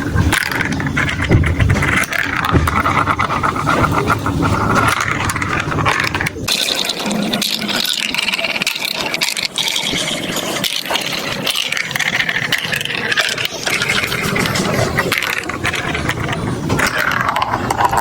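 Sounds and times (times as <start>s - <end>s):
marbles rattling down plastic tracks: 0.0s - 18.0s.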